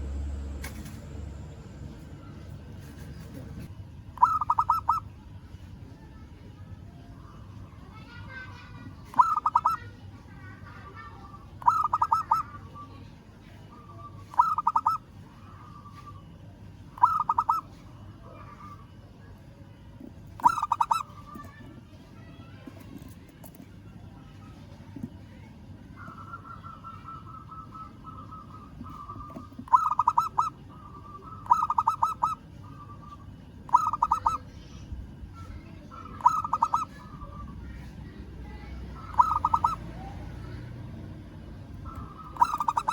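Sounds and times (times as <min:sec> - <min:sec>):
dove cooing: 0:04.2 - 0:05.0, 0:09.1 - 0:09.8, 0:11.6 - 0:12.8, 0:14.3 - 0:15.0, 0:17.0 - 0:17.7, 0:20.4 - 0:21.1, 0:26.0 - 0:34.4, 0:36.0 - 0:37.5, 0:38.9 - 0:40.6, 0:41.8 - 0:42.9.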